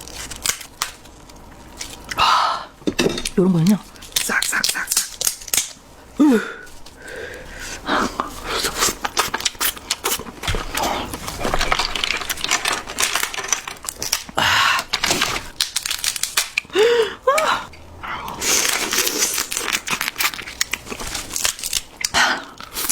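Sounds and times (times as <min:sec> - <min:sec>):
chewing and slurping: 0:08.0 - 0:12.4.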